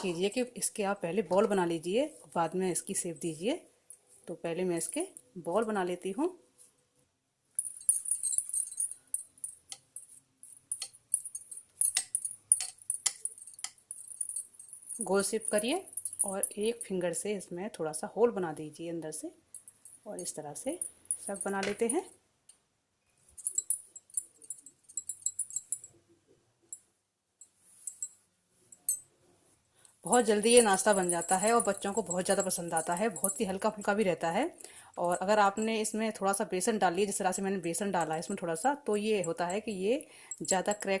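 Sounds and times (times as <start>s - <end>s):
bangles jingling: 7.6s - 16.9s, 19.5s - 22.0s, 23.2s - 25.9s, 27.4s - 29.1s, 30.0s - 36.0s, 37.0s - 41.0s
faint clinking: 7.6s - 16.9s, 19.5s - 22.1s, 23.0s - 26.0s, 26.7s - 29.2s, 29.8s - 33.8s.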